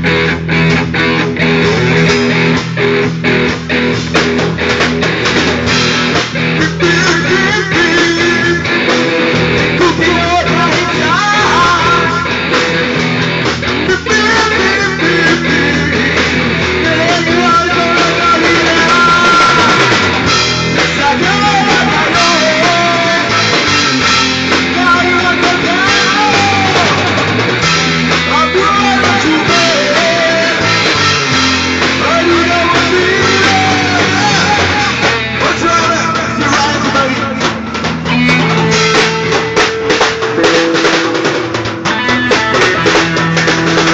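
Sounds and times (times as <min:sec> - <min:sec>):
rock band playing: 0:00.0 - 0:43.9
person singing: 0:06.5 - 0:12.6, 0:13.6 - 0:27.3, 0:28.2 - 0:41.2, 0:41.8 - 0:43.9.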